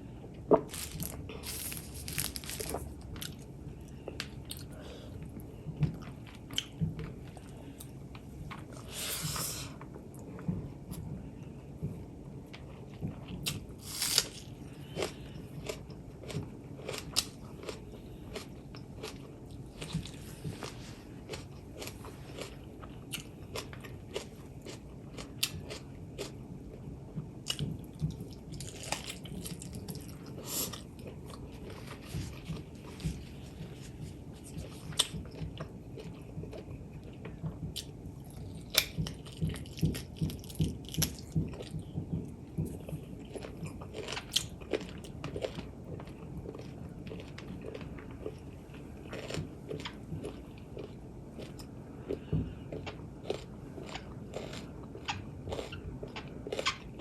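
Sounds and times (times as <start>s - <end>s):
chewing and mouth smacks: 27.4s - 57.0s.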